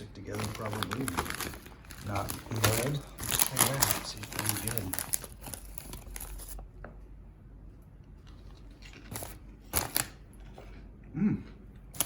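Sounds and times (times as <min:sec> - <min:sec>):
plastic snack bag crinkling: 0:00.2 - 0:06.6, 0:08.4 - 0:10.2
rice crisp crunching: 0:00.3 - 0:06.5.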